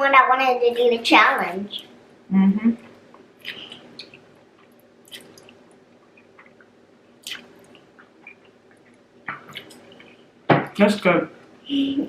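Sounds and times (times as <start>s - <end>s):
wet chewing and lip smacks: 3.4s - 10.2s.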